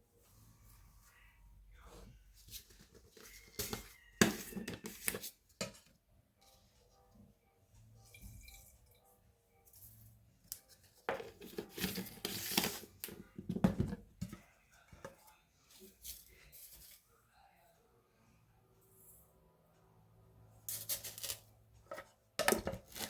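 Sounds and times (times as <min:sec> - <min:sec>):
rustling crinkling handling noise: 0:09.8 - 0:14.4.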